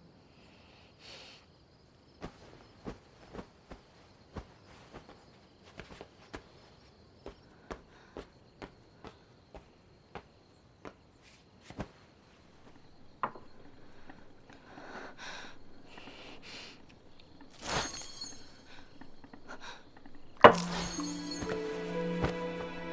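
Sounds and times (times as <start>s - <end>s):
soft shuffling: 2.2s - 7.4s, 8.2s - 22.9s
music: 20.2s - 22.9s.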